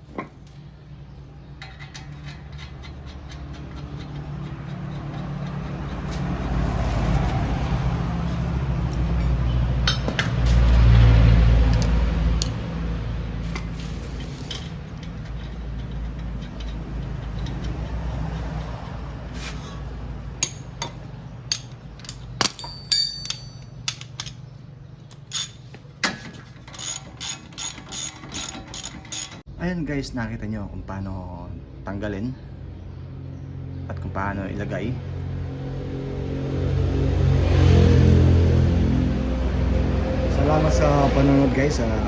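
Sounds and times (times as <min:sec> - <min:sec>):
hand tools clicking and tapping metal: 0:01.5 - 0:07.4, 0:08.9 - 0:12.7, 0:13.5 - 0:29.5.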